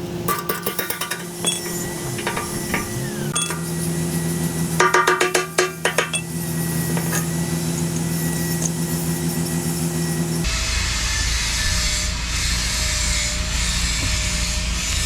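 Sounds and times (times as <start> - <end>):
low hum of held tones: 0.0 - 10.9
ringing metallic clinks: 0.3 - 4.0, 4.8 - 10.1.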